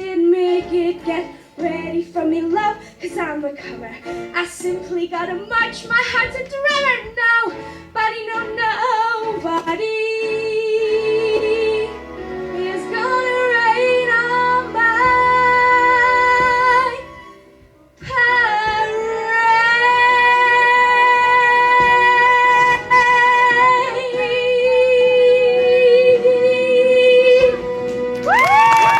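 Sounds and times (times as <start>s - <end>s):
woman singing: 0.0s - 17.4s, 18.0s - 27.9s
backing music: 0.0s - 28.9s.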